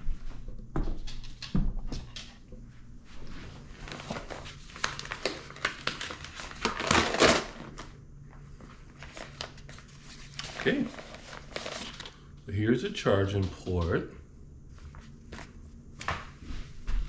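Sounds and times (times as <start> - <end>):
packaging crinkling: 3.7 - 12.4.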